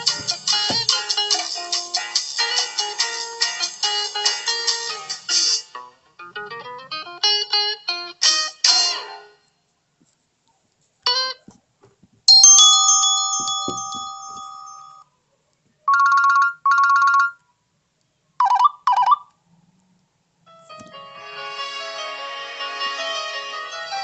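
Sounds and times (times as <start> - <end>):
bell-like tone: 12.3 - 15.0.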